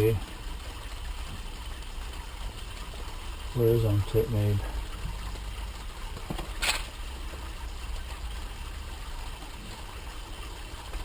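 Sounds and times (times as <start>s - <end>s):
short scratchy rustle: 6.6s - 6.9s.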